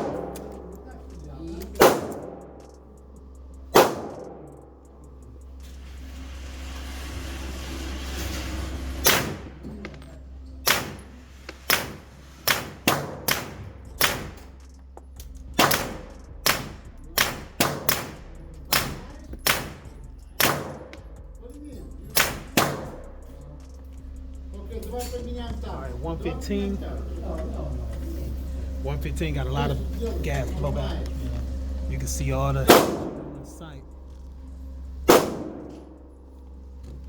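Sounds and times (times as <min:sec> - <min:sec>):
suppressed gunshots: 0:01.7 - 0:02.9, 0:03.7 - 0:04.8, 0:09.0 - 0:09.6, 0:10.6 - 0:14.8, 0:15.6 - 0:21.0, 0:22.2 - 0:23.2, 0:32.7 - 0:33.3, 0:35.1 - 0:36.0.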